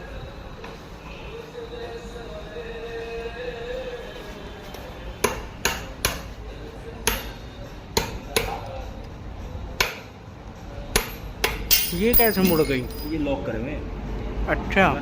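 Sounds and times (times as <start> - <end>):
hammer strikes: 11.0 - 13.2.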